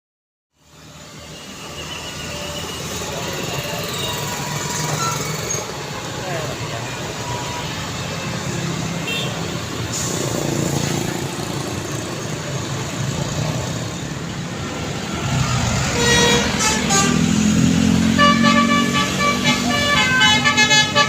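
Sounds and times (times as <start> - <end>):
road traffic: 0.5 - 21.0
multi-tone bus air horn: 9.0 - 9.4, 15.9 - 21.0.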